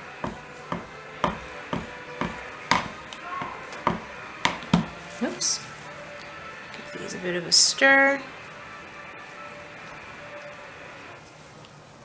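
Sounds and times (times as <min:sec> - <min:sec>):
utensil knocking against container: 0:00.2 - 0:03.0, 0:03.7 - 0:05.0.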